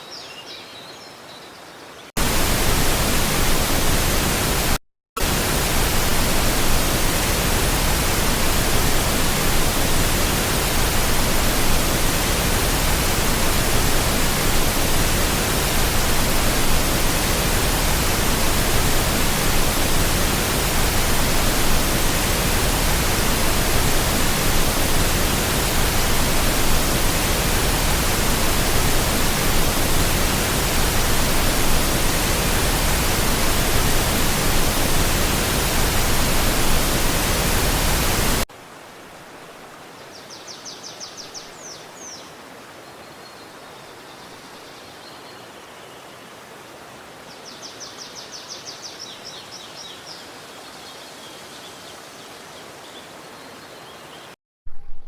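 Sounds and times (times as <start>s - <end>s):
quiet flowing water: 1.2s - 54.3s
loud rushing water: 2.2s - 39.9s.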